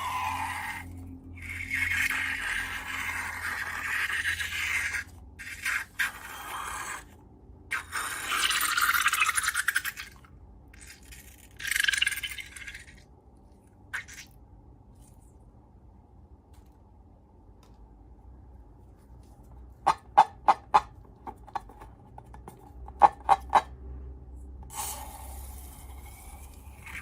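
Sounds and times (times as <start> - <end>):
wet squishing of slime: 13.8 - 15.2.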